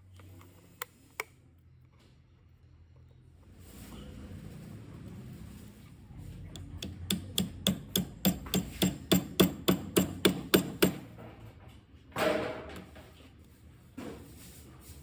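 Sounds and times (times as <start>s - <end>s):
hammer striking: 6.6s - 11.1s.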